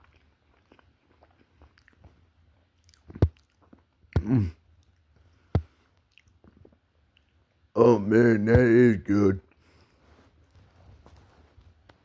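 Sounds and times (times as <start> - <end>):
person chewing: 0.0 - 7.4.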